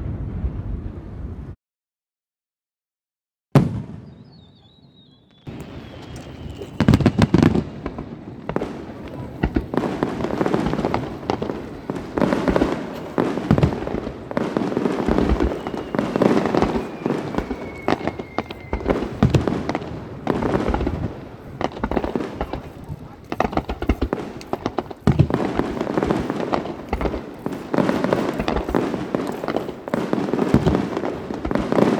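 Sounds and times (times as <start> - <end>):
falling whistle: 4.0 - 7.9, 14.8 - 19.9
firework shells booming: 5.4 - 31.9
fireworks crackling: 5.4 - 31.9.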